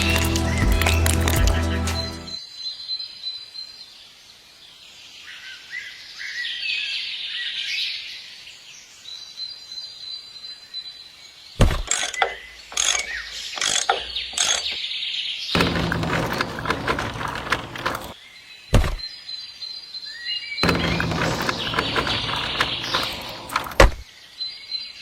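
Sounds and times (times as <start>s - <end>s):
birds chirping: 0.0s - 3.8s, 9.3s - 25.0s
sharp knocks: 11.6s - 14.8s, 15.6s - 19.1s, 20.6s - 24.0s.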